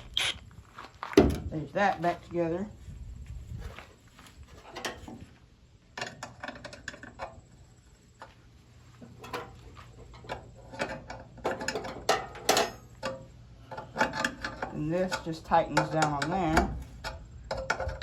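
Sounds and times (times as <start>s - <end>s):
metal clicks and clanks of tools: 9.2s - 18.0s.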